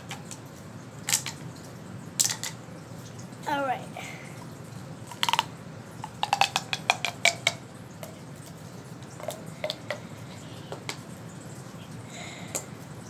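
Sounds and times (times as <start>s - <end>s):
small hard pieces clicking: 1.1s - 1.4s, 2.2s - 2.6s, 5.1s - 8.2s.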